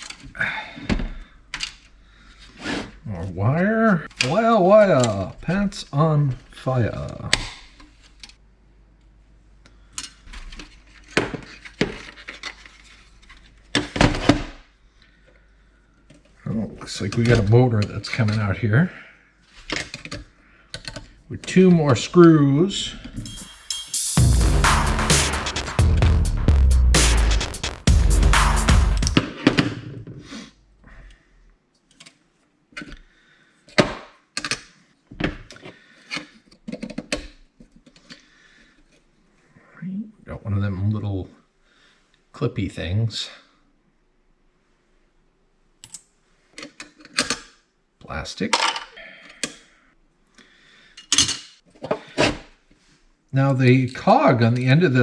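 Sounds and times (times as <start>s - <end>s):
music: 23.2s - 29.4s.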